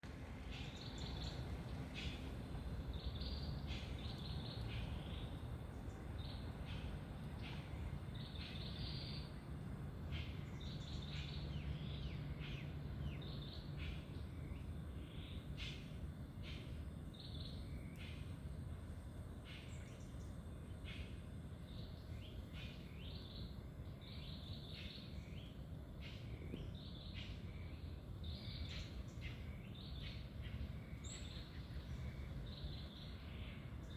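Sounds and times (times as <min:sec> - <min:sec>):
low background rumble: 0:00.0 - 0:33.9
birds chirping and calling: 0:00.4 - 0:09.4.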